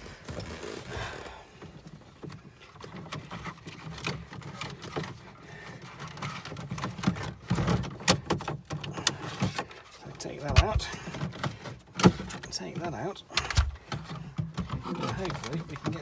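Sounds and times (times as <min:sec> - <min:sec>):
plastic trim clicking and knocking: 0:10.4 - 0:12.4, 0:13.4 - 0:16.0.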